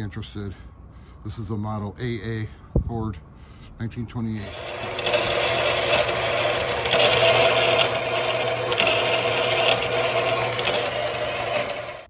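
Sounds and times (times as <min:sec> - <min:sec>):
power tool whirring with rattle: 0:04.4 - 0:12.0.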